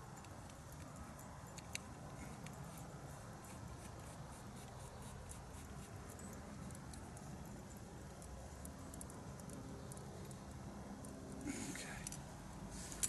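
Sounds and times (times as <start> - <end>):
small metal parts clicking: 0.1 - 2.9, 4.7 - 12.3.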